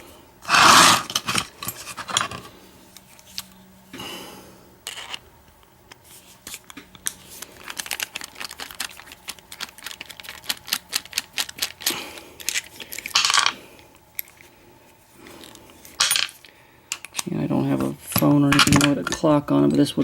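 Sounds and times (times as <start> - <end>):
scrape on desk: 0.4 - 2.5.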